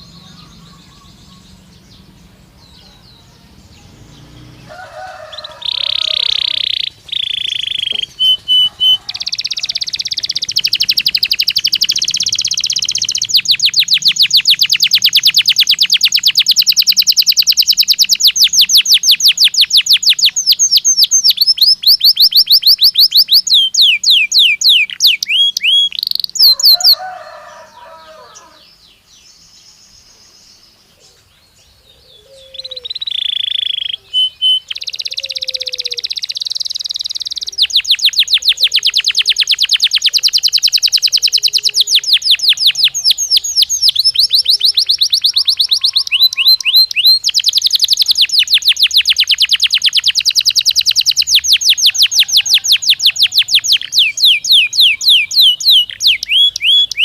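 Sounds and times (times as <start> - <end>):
canary singing: 0.0 - 57.0.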